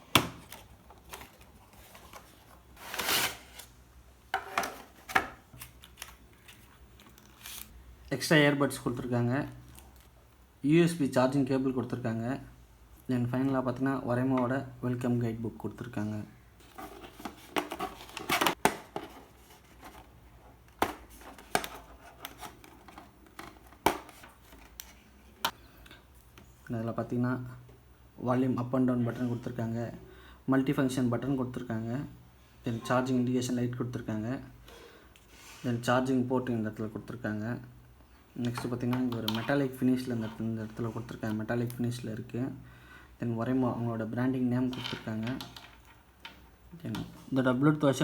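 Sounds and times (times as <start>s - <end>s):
packaging rustling: 0.4s - 3.8s, 16.6s - 24.8s.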